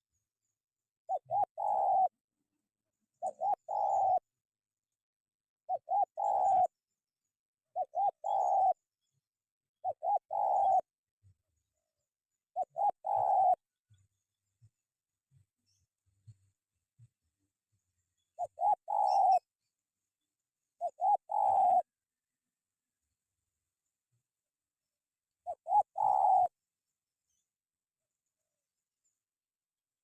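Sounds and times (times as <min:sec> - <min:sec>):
dove cooing: 0:01.1 - 0:02.2, 0:03.2 - 0:04.3, 0:05.7 - 0:06.8, 0:07.7 - 0:08.8, 0:09.8 - 0:10.9, 0:12.6 - 0:13.6, 0:18.4 - 0:19.5, 0:20.8 - 0:21.9, 0:25.4 - 0:26.6.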